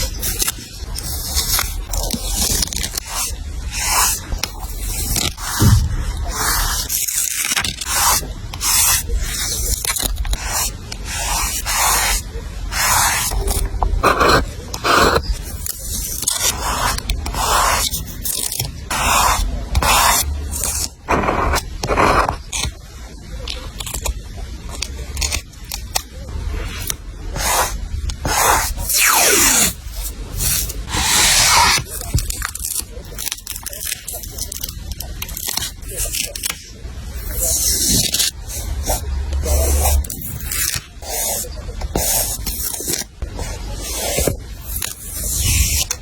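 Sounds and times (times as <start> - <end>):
scratchy rubbing on paper: 0.0 - 22.4, 26.7 - 32.1, 37.2 - 46.0.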